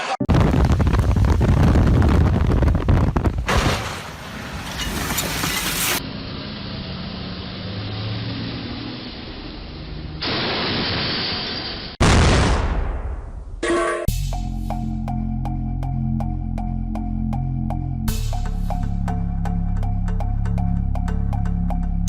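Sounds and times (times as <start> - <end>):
wind noise on microphone: 0.3 - 3.7
vehicle rumble: 0.3 - 10.4.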